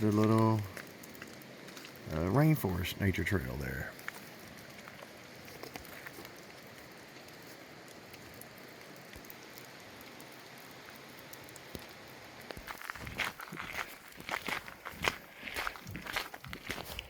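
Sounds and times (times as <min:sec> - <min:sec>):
light rain pattering: 0:00.0 - 0:17.0
small drips: 0:00.0 - 0:17.0
footsteps: 0:12.5 - 0:17.0.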